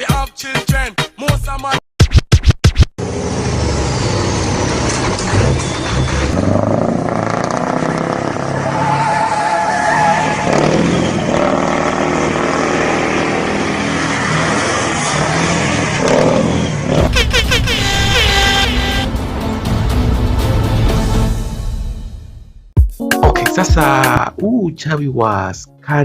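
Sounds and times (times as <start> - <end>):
vehicle engine and road noise: 3.0 - 21.4.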